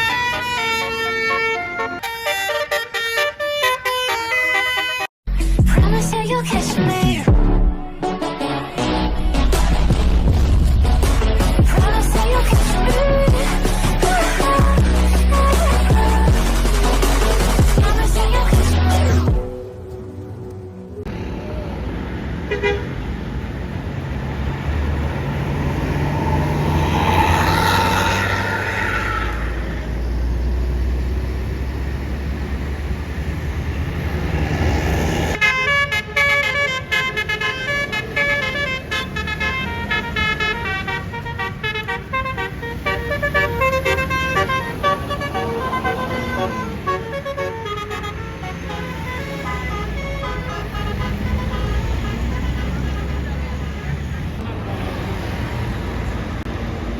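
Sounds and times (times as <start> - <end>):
multi-tone bus horn tune: 0.0 - 5.2, 22.5 - 23.0, 35.3 - 54.3
vehicle engines running: 8.9 - 56.9
vehicle passing: 21.1 - 35.4, 37.7 - 56.9.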